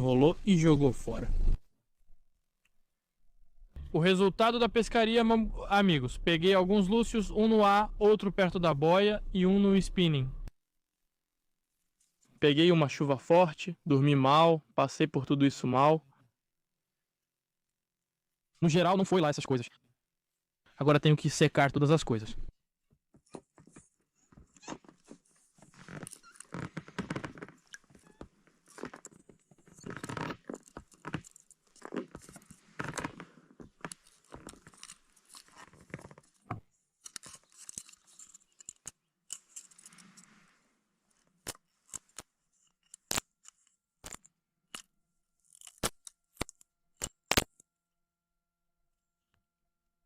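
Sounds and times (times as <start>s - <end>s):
crinkly rustling and scraping of gear: 11.8s - 12.4s, 23.1s - 46.7s.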